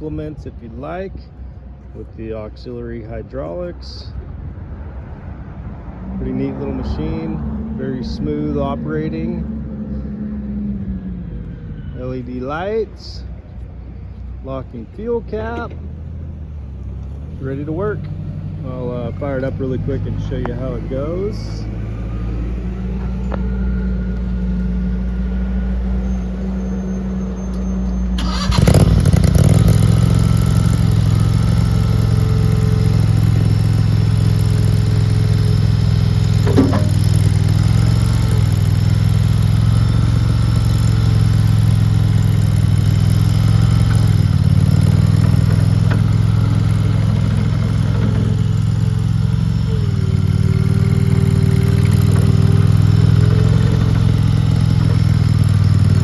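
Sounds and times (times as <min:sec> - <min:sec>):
gas engine starting and running: 0:16.4 - 0:56.0
whining tone: 0:20.3 - 0:56.0.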